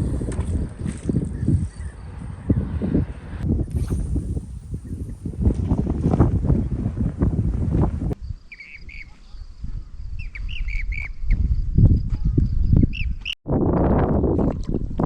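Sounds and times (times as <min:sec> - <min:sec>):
wind buffeting microphone: 0:00.0 - 0:15.0
small bird chirping: 0:08.2 - 0:11.6, 0:12.5 - 0:13.4.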